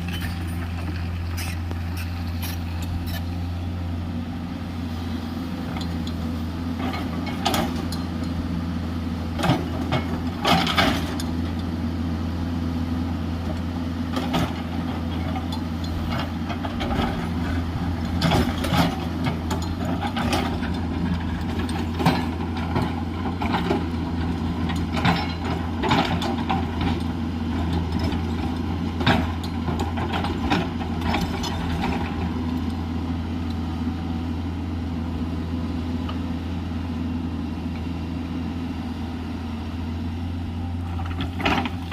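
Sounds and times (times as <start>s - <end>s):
excavator diesel engine running: 0.0s - 41.9s.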